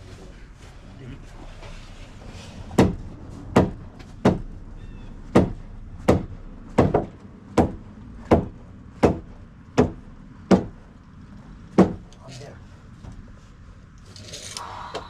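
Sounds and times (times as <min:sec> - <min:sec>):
hammer striking wood: 0:02.8 - 0:04.5, 0:05.3 - 0:10.8, 0:11.7 - 0:12.1.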